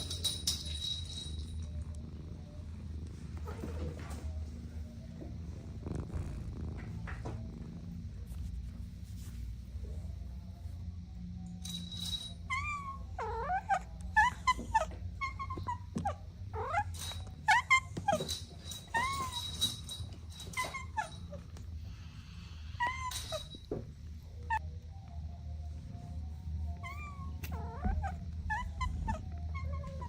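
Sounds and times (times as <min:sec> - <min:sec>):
low steady rumble: 0:00.0 - 0:13.2.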